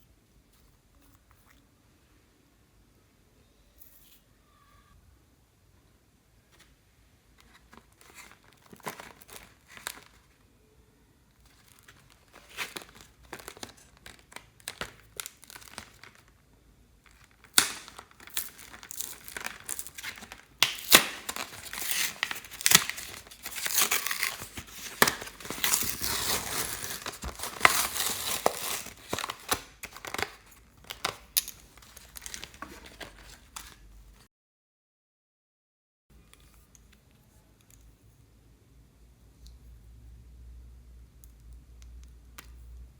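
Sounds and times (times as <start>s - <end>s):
slime squishing and crackling: 11.4s - 16.3s, 17.1s - 33.3s.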